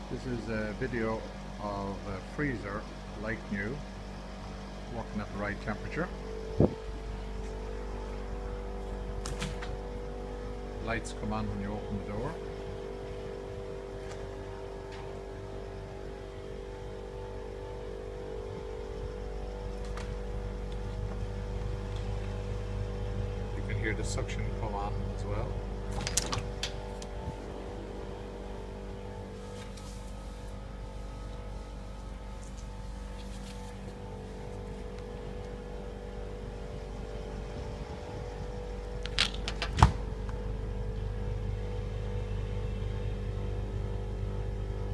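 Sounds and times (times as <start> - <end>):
fridge humming: 0.0 - 44.9.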